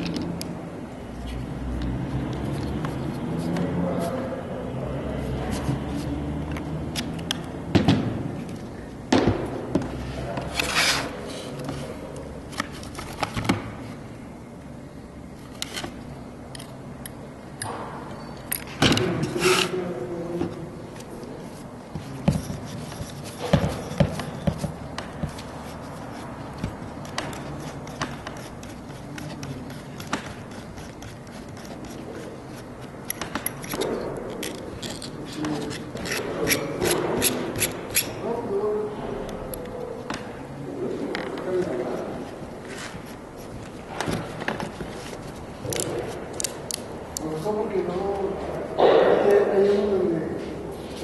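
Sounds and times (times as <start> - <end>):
hard objects knocking and scraping: 21.9 - 38.2.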